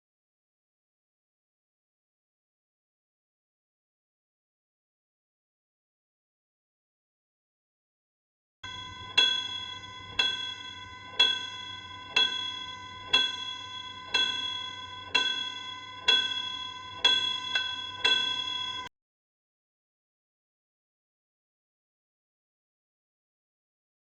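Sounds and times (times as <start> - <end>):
ringing bell-like tone: 8.6 - 18.9.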